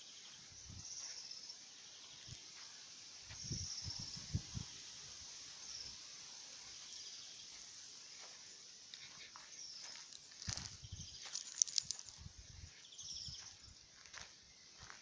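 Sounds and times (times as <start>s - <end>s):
insects shrilling: 0.6s - 12.5s.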